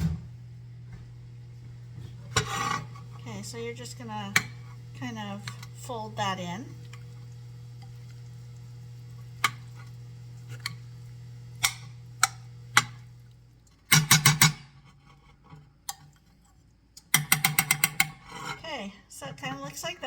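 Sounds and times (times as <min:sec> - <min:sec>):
low steady hum: 0:00.0 - 0:20.0
spoon scraping against a dish: 0:02.3 - 0:03.2, 0:17.6 - 0:18.6.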